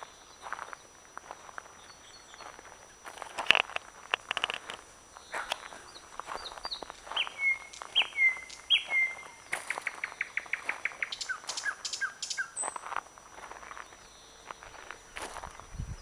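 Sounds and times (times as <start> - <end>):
thrush nightingale singing: 1.7 - 2.6, 5.1 - 12.8.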